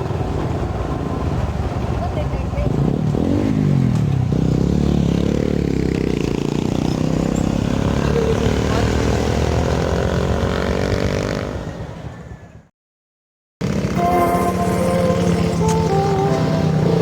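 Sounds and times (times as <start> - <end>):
engine running: 13.6 - 17.0.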